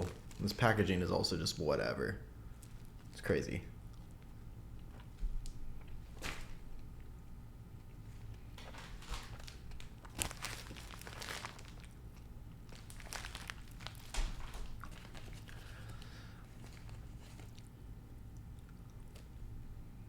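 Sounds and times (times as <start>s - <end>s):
hard candy crunching: 8.6s - 17.7s.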